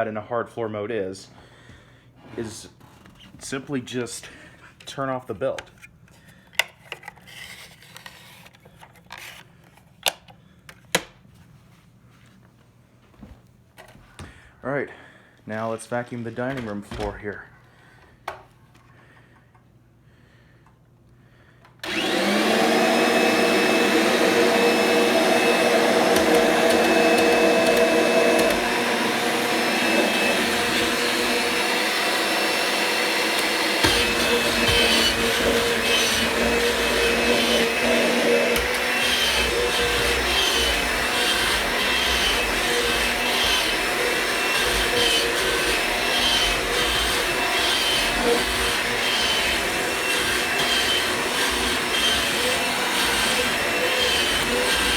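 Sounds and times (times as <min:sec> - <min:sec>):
vacuum cleaner motor whine: 0:21.8 - 0:54.9.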